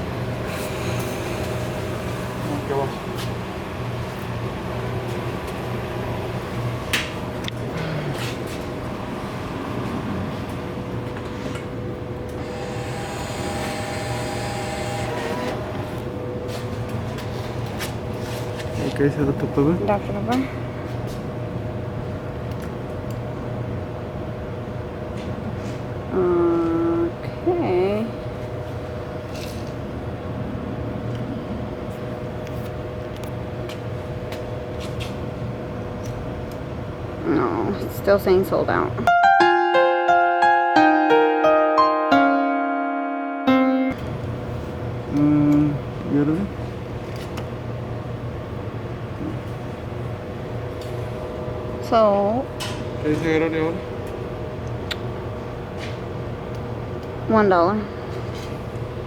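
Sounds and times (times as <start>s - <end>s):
vending machine hum: 0.0s - 59.0s
small electric motor whirring: 12.4s - 15.6s.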